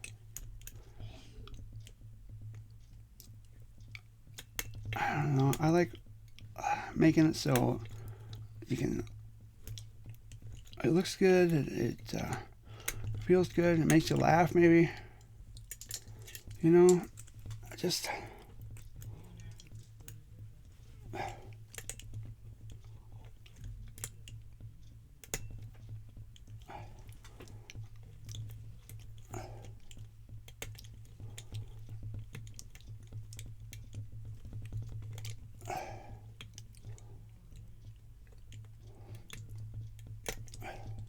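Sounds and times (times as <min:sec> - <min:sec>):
lock pick clicking and scraping: 0:15.2 - 0:17.7, 0:38.3 - 0:41.0.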